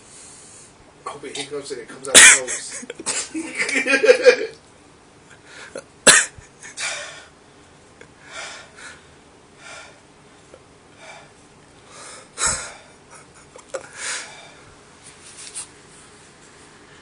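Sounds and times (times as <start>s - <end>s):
man breathing hard and gasping: 6.6s - 7.4s, 8.2s - 10.1s, 10.9s - 13.0s, 13.8s - 14.8s.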